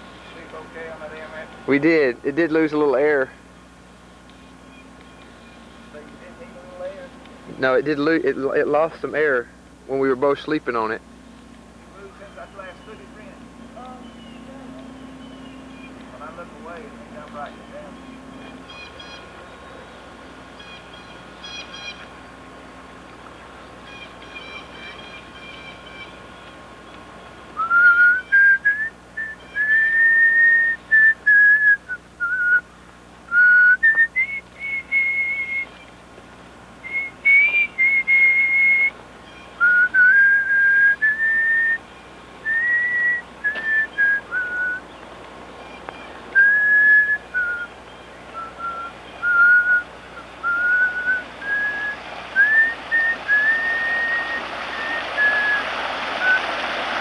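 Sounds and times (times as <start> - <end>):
person whistling a tune: 27.6 - 32.6, 33.3 - 35.7, 36.9 - 38.9, 39.6 - 41.8, 42.4 - 44.8, 46.4 - 47.7, 48.4 - 49.8.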